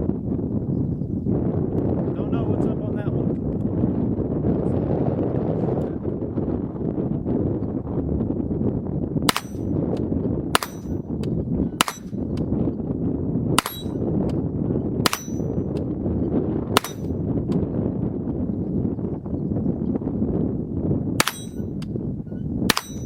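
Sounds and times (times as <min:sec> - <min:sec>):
low wind rush: 0:00.0 - 0:23.0
metallic ring of steel target: 0:09.3 - 0:09.7, 0:10.6 - 0:11.1, 0:11.8 - 0:12.2, 0:13.6 - 0:14.1, 0:15.0 - 0:15.7, 0:16.8 - 0:17.2, 0:21.2 - 0:21.9, 0:22.7 - 0:23.0
rifle shots: 0:09.3 - 0:09.7, 0:10.6 - 0:11.0, 0:11.8 - 0:12.2, 0:13.6 - 0:14.0, 0:15.1 - 0:15.5, 0:16.8 - 0:17.2, 0:21.2 - 0:21.7, 0:22.7 - 0:23.0.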